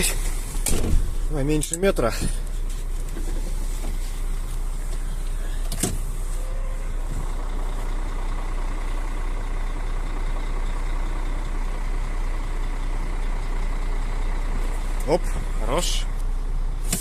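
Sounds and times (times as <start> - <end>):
truck diesel engine running: 0.0 - 17.0.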